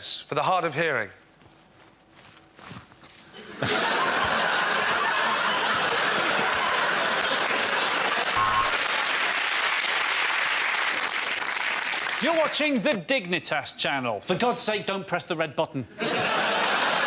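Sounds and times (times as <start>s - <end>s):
audience laughing: 3.3s - 9.1s, 16.0s - 17.0s
audience applause: 3.6s - 12.5s.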